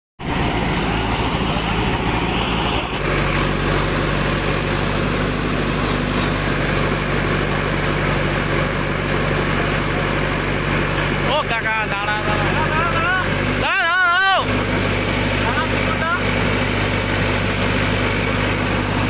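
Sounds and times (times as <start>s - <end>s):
heavy diesel engine running: 0.2s - 19.0s.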